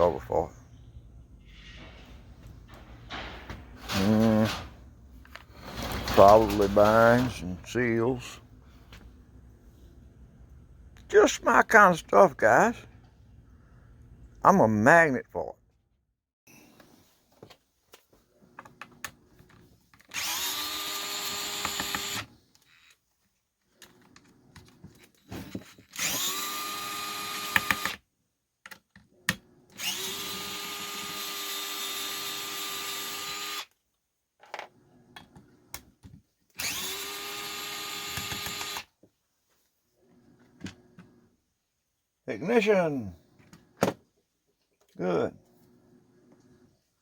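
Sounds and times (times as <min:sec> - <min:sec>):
electric drill whining: 0:20.1 - 0:22.9, 0:25.6 - 0:28.0, 0:29.7 - 0:33.7, 0:36.6 - 0:38.9.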